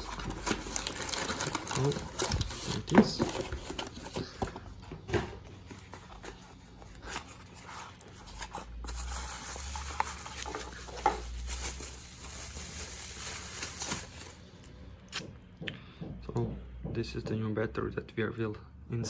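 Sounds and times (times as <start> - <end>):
hands rustling and handling: 5.5 - 15.3.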